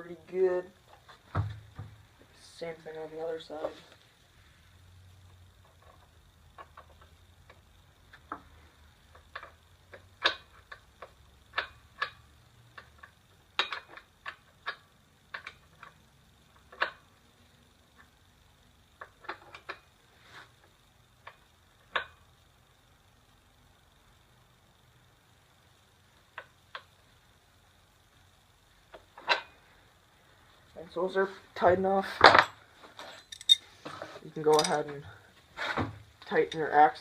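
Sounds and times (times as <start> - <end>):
wrenches clicking on nuts: 33.0 - 33.6, 34.5 - 34.9.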